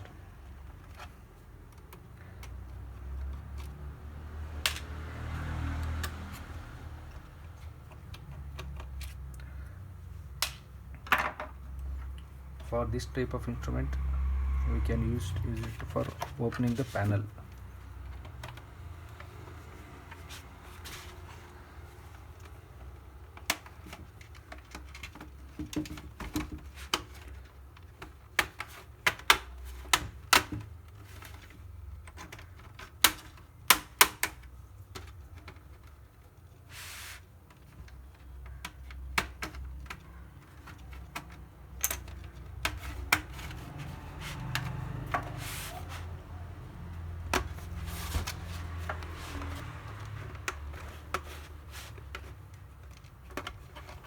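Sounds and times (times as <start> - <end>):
plastic clips clicking and snapping: 10.3 - 11.0.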